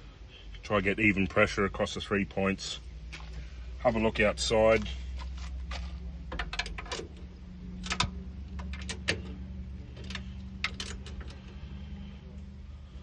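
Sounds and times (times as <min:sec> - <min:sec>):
steady low hum: 0:00.0 - 0:13.0
tools clicking and knocking: 0:05.7 - 0:11.5.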